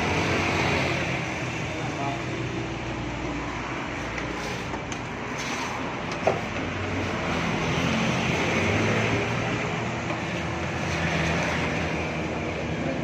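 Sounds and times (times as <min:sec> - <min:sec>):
vehicle engine and traffic: 0:00.0 - 0:13.0.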